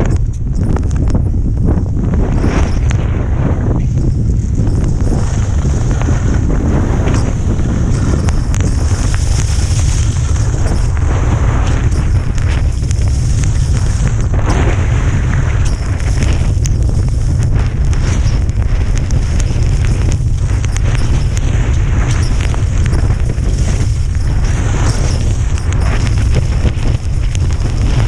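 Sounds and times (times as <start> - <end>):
wind buffeting microphone: 0.0 - 28.0
skis hissing over snow: 4.9 - 17.1.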